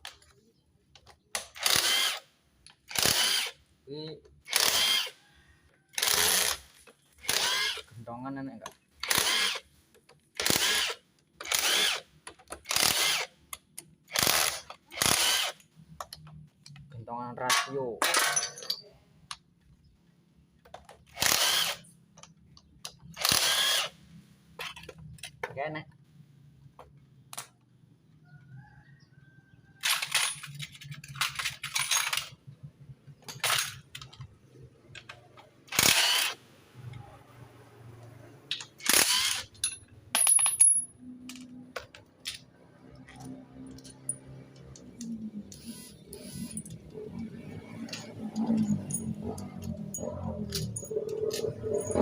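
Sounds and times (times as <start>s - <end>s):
metal parts clinking and rattling: 16.0s - 19.0s, 24.6s - 25.5s, 29.8s - 32.5s, 33.2s - 35.9s, 38.5s - 52.0s.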